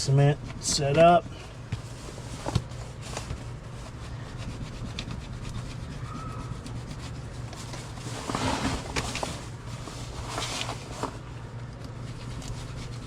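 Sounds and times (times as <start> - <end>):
steady low hum: 0.0 - 13.0
hands rubbing rubber suit material: 1.7 - 11.2.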